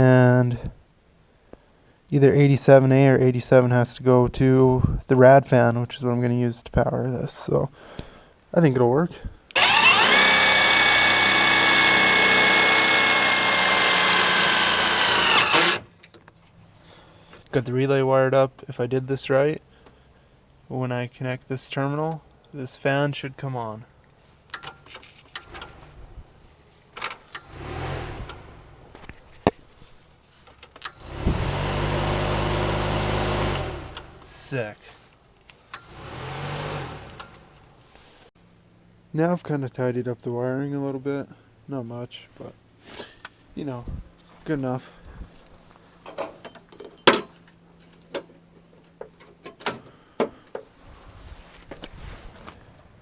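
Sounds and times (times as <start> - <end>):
clicks and knocks from handling parts: 24.5 - 31.0.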